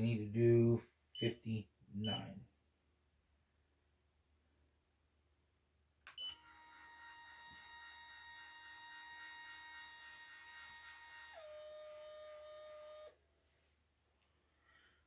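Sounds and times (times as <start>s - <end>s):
dispenser click and beep: 2.0s - 2.3s
powder dispenser motor whining: 6.2s - 13.2s.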